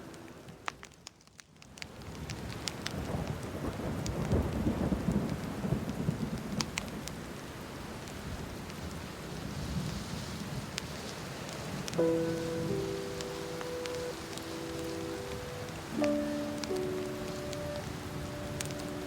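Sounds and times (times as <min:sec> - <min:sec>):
steady rain: 0:00.0 - 0:19.0
wood fire crackling: 0:00.0 - 0:19.0
thunder rumble: 0:11.6 - 0:19.0.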